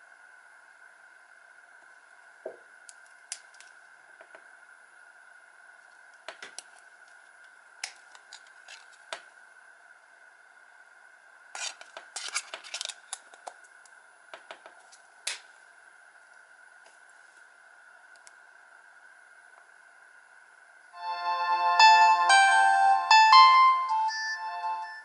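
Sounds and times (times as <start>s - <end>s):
faint high hum: 0.0s - 25.0s.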